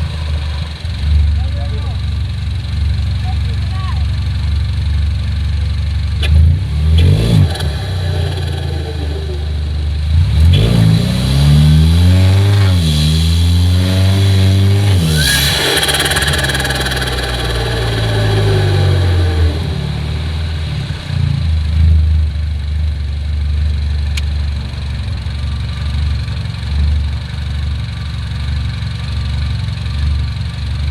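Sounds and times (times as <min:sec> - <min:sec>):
car engine revving: 0:00.0 - 0:03.3, 0:05.0 - 0:23.0
turbo flutter hiss: 0:12.6 - 0:20.0.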